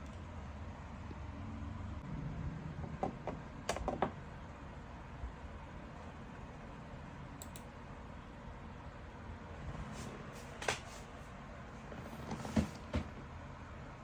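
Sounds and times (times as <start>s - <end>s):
clicks: 7.4s - 7.7s.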